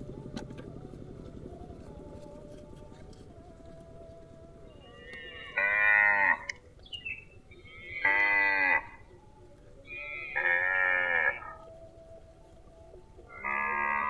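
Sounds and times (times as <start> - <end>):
cow mooing: 4.8 - 6.6, 7.6 - 9.0, 9.9 - 11.7, 13.3 - 14.0.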